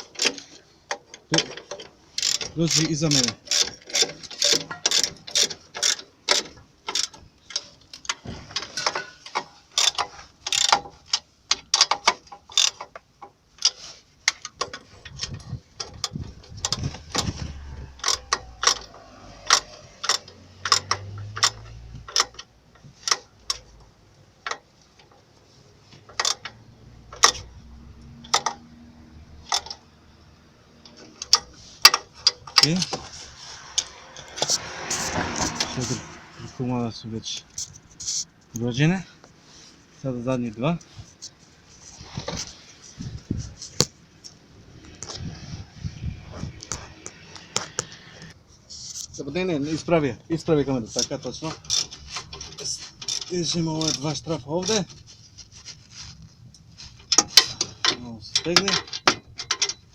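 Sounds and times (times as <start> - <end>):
ratchet wrench clicking: 1.6 - 8.1, 9.7 - 13.0, 13.6 - 23.7, 26.1 - 27.5.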